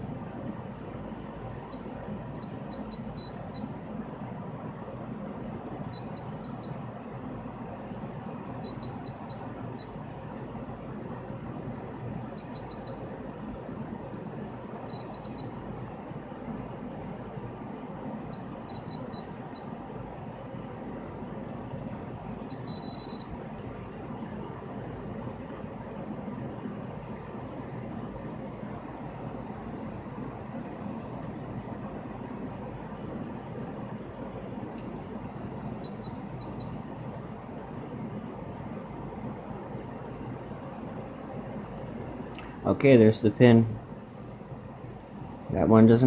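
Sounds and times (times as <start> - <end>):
continuity tester chirps: 1.6 - 3.8, 5.8 - 6.9, 8.4 - 10.2, 12.2 - 13.3, 14.8 - 15.7, 18.2 - 19.8, 22.4 - 23.4, 35.3 - 36.9
multimeter beeps: 1.7 - 3.8, 5.9 - 6.8, 8.6 - 10.0, 12.3 - 13.1, 14.8 - 15.6, 18.3 - 19.7, 22.4 - 23.4, 35.5 - 36.8.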